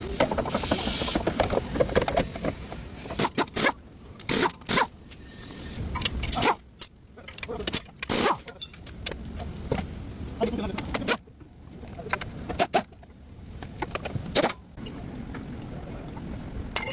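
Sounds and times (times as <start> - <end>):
metal tools clinking and scraping: 4.2 - 9.7.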